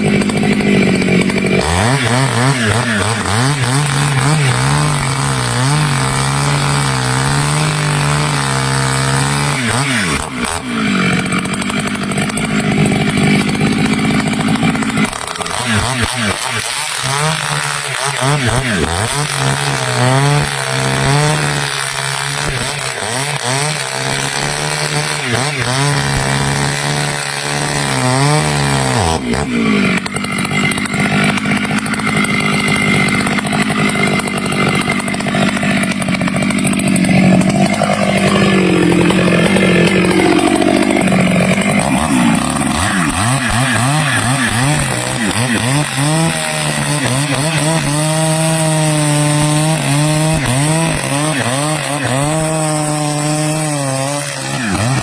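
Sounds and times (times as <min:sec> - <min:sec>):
chainsaw sawing wood: 0:00.0 - 0:55.0.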